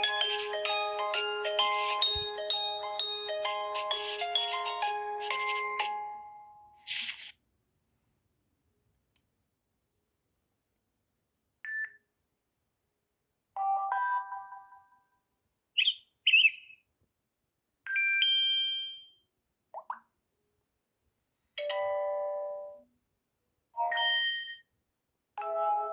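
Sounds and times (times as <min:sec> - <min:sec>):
phone chime: 0:00.2 - 0:05.5
quick high chirps: 0:03.8 - 0:06.0.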